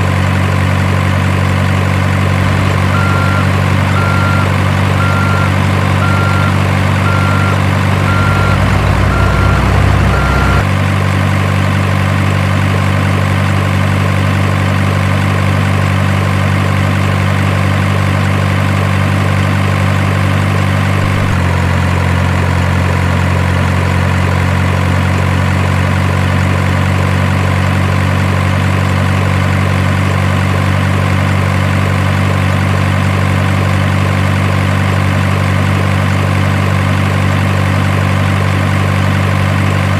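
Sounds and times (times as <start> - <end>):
truck engine idling: 0.0 - 24.1.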